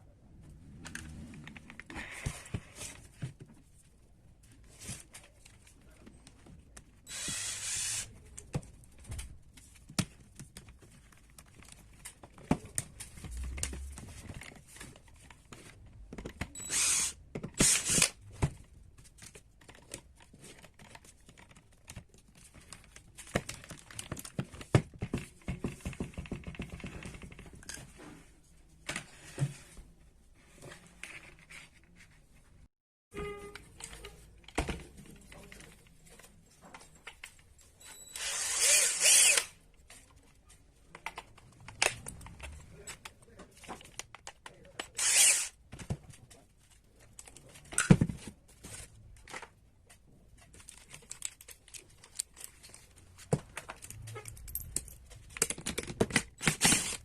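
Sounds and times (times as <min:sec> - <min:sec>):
tools and parts clicking: 0:50.5 - 0:57.0.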